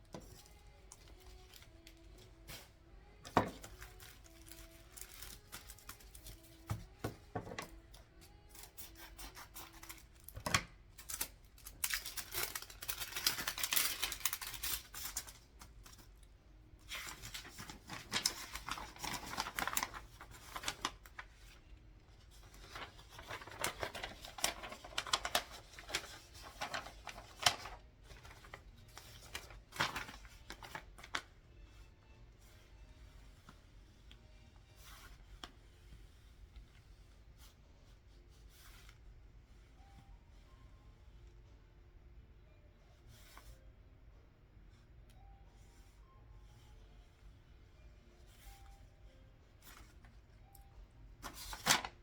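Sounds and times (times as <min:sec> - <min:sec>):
paper rustling and ripping: 0:03.4 - 0:06.7, 0:08.4 - 0:16.1, 0:16.8 - 0:21.6, 0:22.3 - 0:31.3, 0:51.2 - 0:52.0.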